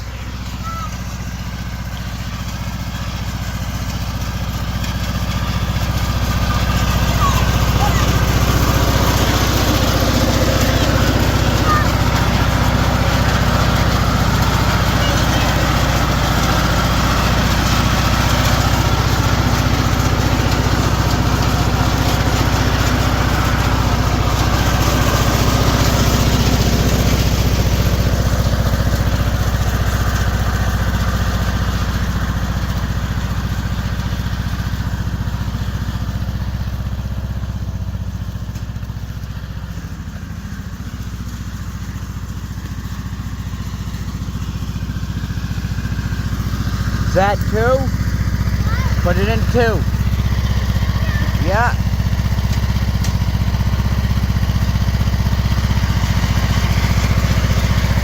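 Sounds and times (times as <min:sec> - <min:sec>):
riding lawn mower engine: 0:00.0 - 0:58.0.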